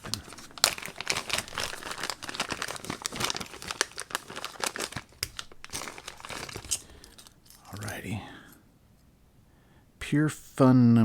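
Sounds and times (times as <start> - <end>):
packing material crinkling: 0.0 - 7.9.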